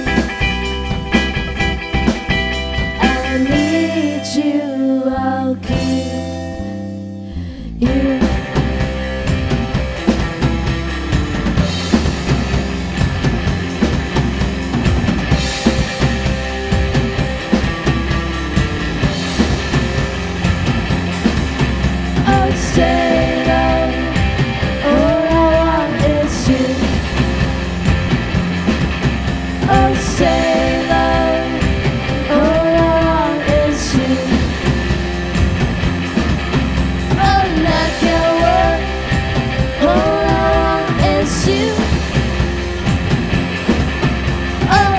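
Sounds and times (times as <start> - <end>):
rock band playing: 0.0 - 4.6, 5.6 - 44.9.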